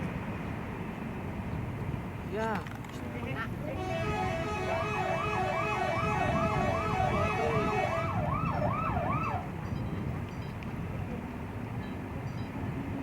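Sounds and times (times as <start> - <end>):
bus horn warbling: 3.8 - 8.3.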